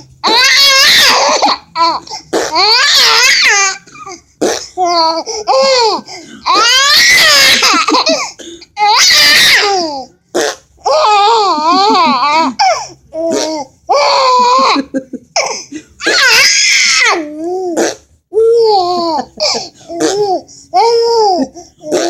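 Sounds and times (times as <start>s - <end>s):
baby laughing: 10.8s - 17.8s, 18.4s - 22.0s.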